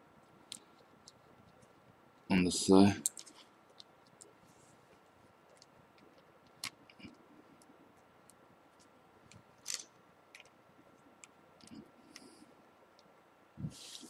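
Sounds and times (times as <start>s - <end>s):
small clicks of phone parts handled: 3.0s - 4.3s, 8.8s - 10.6s.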